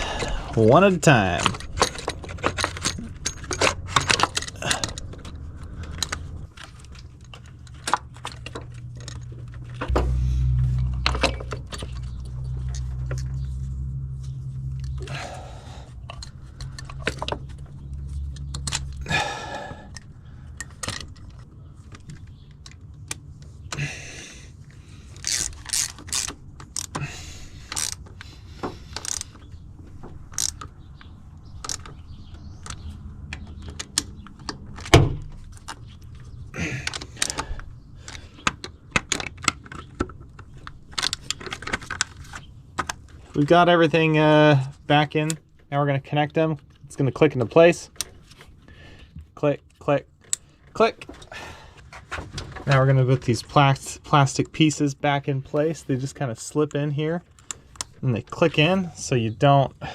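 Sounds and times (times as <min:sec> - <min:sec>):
low steady hum: 0:00.0 - 0:38.7
metallic clicks of socket wrench: 0:25.2 - 0:27.0, 0:27.7 - 0:28.1, 0:28.9 - 0:29.4, 0:30.3 - 0:30.7.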